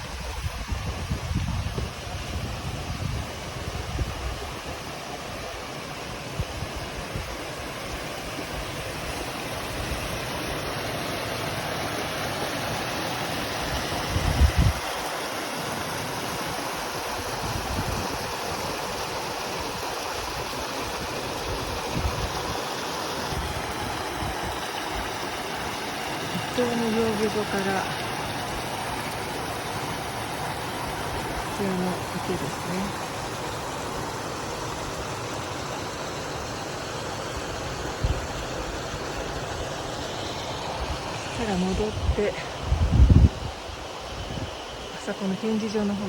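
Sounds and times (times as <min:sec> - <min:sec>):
wind rumble on microphone: 0:00.0 - 0:05.5, 0:06.3 - 0:10.2, 0:13.5 - 0:15.1, 0:17.0 - 0:27.8, 0:37.8 - 0:39.0, 0:40.6 - 0:46.0
flowing water rushing: 0:00.0 - 0:46.0.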